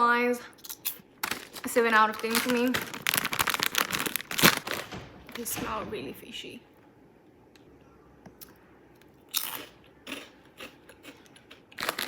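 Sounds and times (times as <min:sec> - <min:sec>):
crunchy chip crunching: 0:09.3 - 0:12.0.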